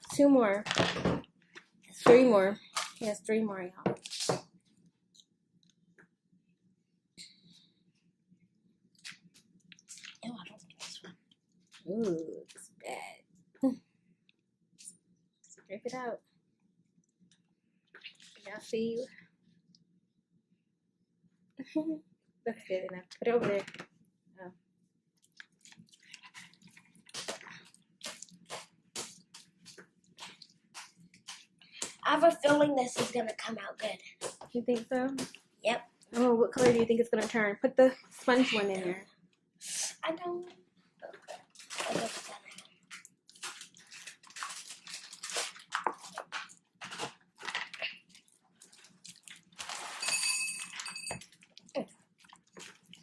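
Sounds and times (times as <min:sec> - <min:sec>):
slime squelching by hand: 0:25.2 - 0:33.5, 0:41.0 - 0:50.1, 0:50.7 - 0:53.0.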